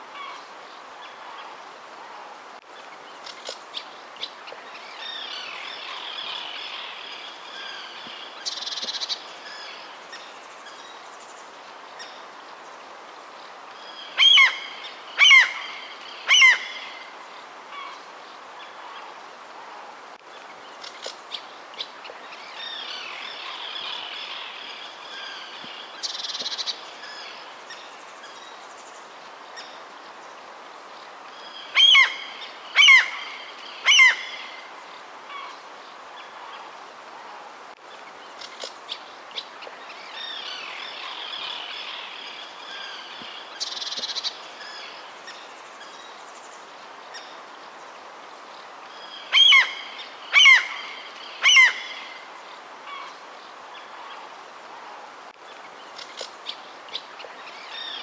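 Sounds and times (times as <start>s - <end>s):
steady soft hiss: 0.0s - 58.0s.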